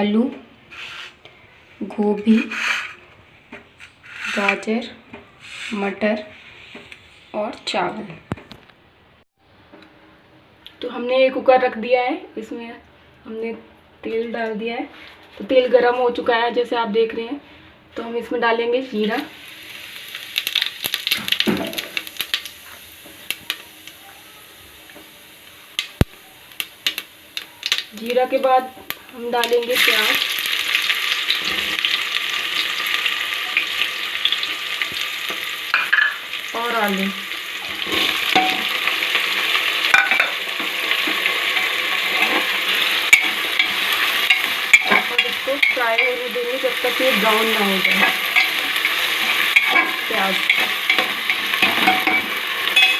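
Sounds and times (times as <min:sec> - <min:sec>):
faint oil sizzle: 0:18.9 - 0:52.9
seeds popping in hot oil: 0:19.1 - 0:24.0, 0:24.9 - 0:52.9
spoon clinking on pot: 0:43.1 - 0:46.2, 0:47.8 - 0:52.9.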